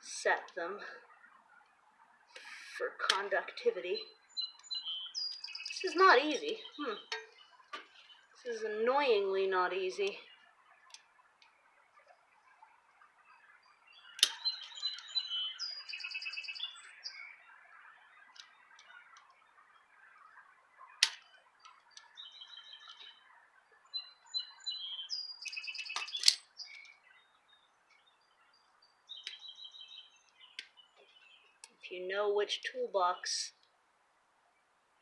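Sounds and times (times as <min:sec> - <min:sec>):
small birds chirping: 0:00.0 - 0:35.0
sharp clicks: 0:14.2 - 0:15.1.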